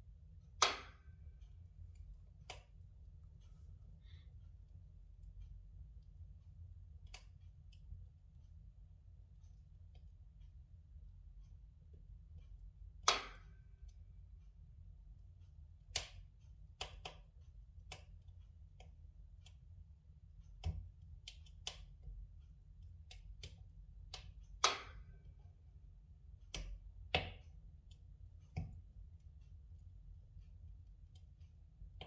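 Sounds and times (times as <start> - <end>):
faint low rumble: 0.0 - 13.0.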